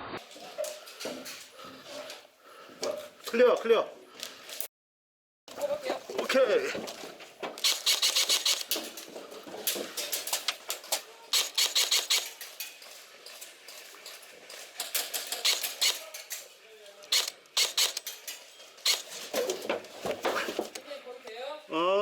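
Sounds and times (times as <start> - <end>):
airsoft guns firing bursts: 7.6 - 8.8, 11.4 - 12.5, 15.2 - 16.2, 17.1 - 18.1, 18.9 - 19.2.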